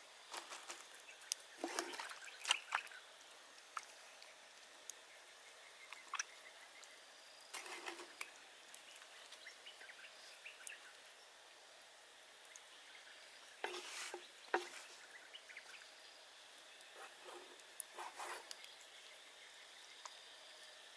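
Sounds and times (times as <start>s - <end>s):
small clicks and crackles: 0.2s - 11.0s, 16.7s - 19.1s
loud rustling handling noises: 0.3s - 1.0s.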